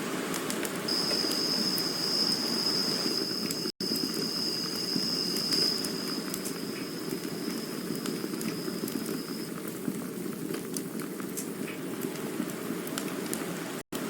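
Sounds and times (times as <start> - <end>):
campfire rushing: 0.0 - 14.0
fire crackles and pops: 0.0 - 14.0
thin high whistle: 0.9 - 3.7.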